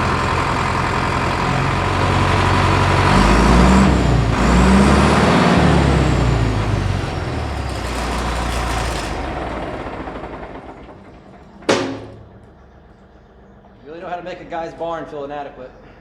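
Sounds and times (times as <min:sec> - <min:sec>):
bulldozer diesel engine running: 0:00.0 - 0:16.0
short sharp knock: 0:11.7 - 0:12.4.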